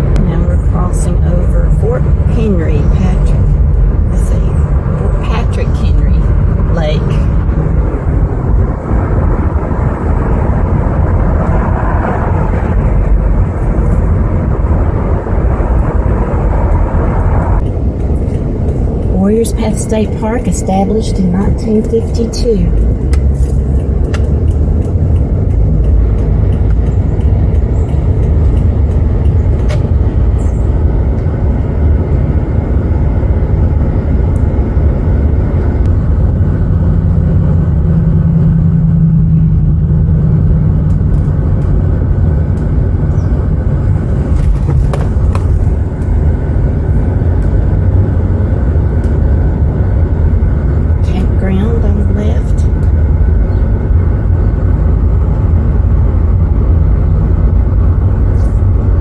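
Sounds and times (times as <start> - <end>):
car engine hum: 0.0 - 59.0
wind and road noise: 0.0 - 59.0.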